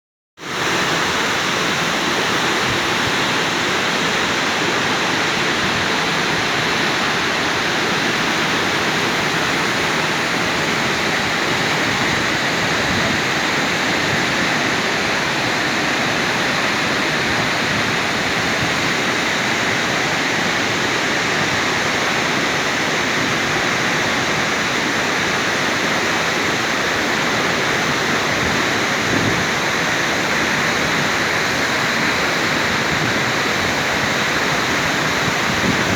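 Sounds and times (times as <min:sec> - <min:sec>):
waterfall roaring: 0:00.4 - 0:35.9.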